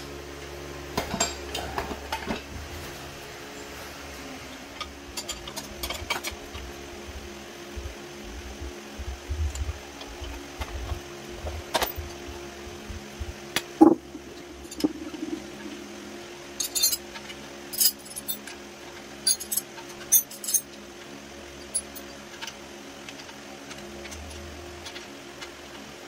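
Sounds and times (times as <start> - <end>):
steady low hum: 0.0 - 26.0
metal tools clinking: 14.6 - 15.3, 16.6 - 17.0, 17.7 - 18.5, 19.2 - 20.7, 21.6 - 22.2.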